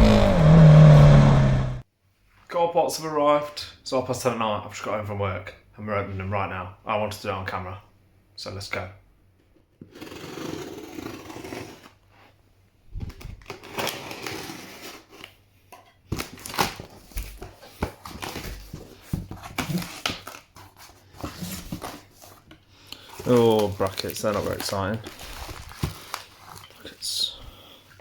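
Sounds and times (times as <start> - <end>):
cardboard rustling and scraping: 16.2 - 26.8.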